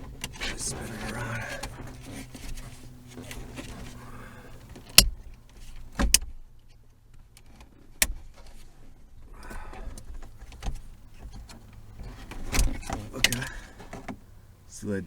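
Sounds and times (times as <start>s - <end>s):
steady low hum: 0.0s - 6.4s.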